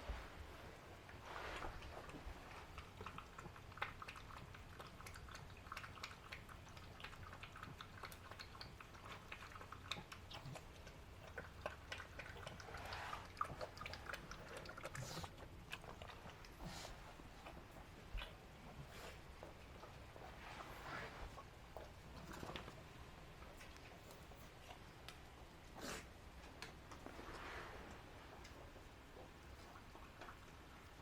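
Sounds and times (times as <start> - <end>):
puppy clicking mouth noises: 1.8 - 20.4, 23.4 - 27.3
puppy snuffling: 9.4 - 22.8.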